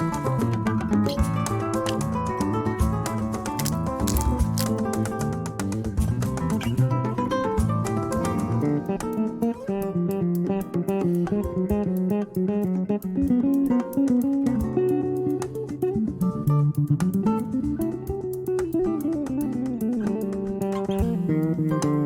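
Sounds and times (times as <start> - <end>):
plucked guitar tune: 0.0 - 22.0.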